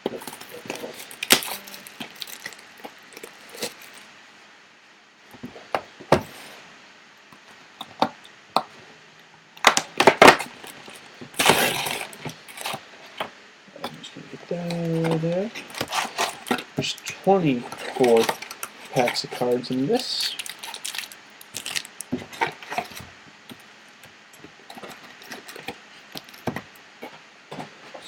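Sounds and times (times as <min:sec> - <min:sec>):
packaging rustling: 0:00.0 - 0:04.1, 0:09.6 - 0:13.2, 0:14.4 - 0:23.1
plastic wrap crackling: 0:00.0 - 0:04.1, 0:09.6 - 0:12.9, 0:14.5 - 0:23.1.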